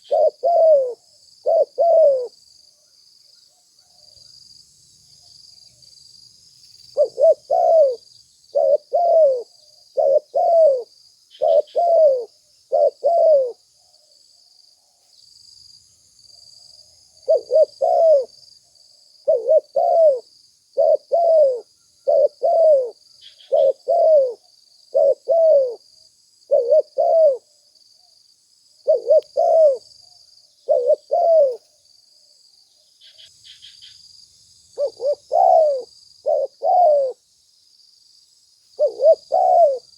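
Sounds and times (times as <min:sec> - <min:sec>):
dove cooing: 0:00.0 - 0:02.4, 0:06.9 - 0:13.7, 0:17.2 - 0:18.4, 0:19.2 - 0:25.8, 0:26.5 - 0:27.5, 0:28.8 - 0:29.9, 0:30.6 - 0:31.7, 0:34.8 - 0:37.2, 0:38.8 - 0:39.9.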